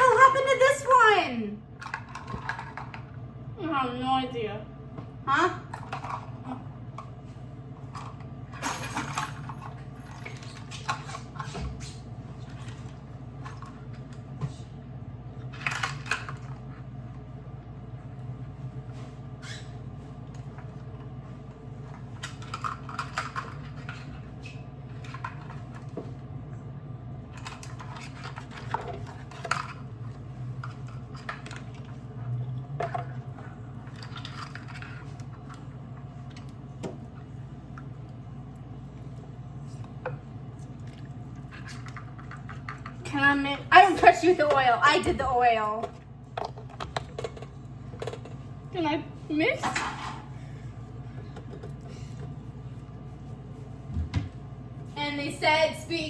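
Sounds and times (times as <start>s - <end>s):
steady low hum: 0.0s - 56.0s.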